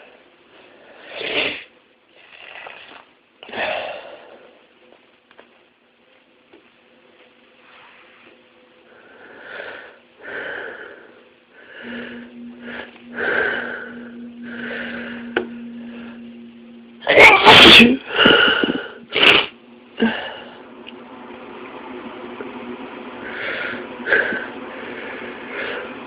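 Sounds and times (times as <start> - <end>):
breathy in-breaths: 9.0 - 16.3
person sneezing: 17.1 - 20.2.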